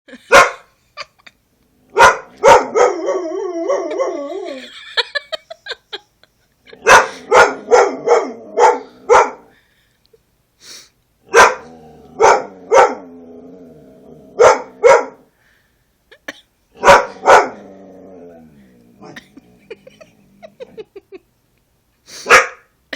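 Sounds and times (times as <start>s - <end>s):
dog barking: 0.3s - 0.7s, 2.0s - 4.1s, 6.8s - 9.5s, 11.3s - 13.1s, 14.4s - 15.3s, 16.8s - 17.6s, 22.2s - 22.7s.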